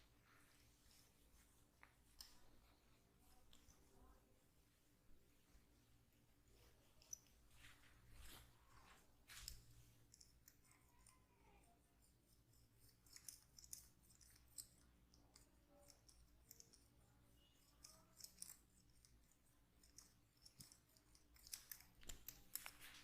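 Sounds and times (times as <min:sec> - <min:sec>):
hands clicking and crackling on hair: 0:17.6 - 0:23.0.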